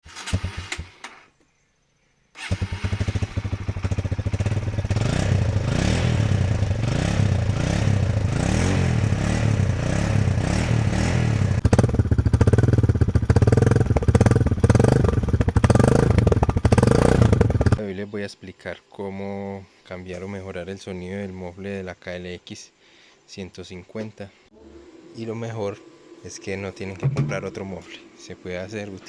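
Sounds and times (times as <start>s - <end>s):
motorcycle engine revving: 0.1s - 1.0s, 2.4s - 17.8s.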